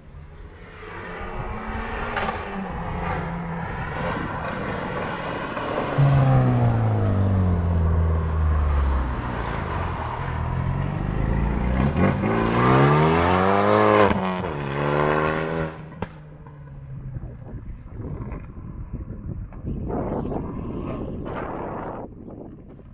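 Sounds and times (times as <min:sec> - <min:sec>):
car engine accelerating: 0:00.8 - 0:18.5.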